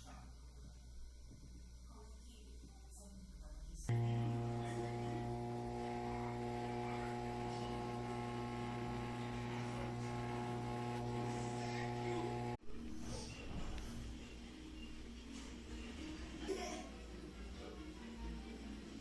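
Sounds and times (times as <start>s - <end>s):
washing machine electrical hum: 3.9s - 12.6s.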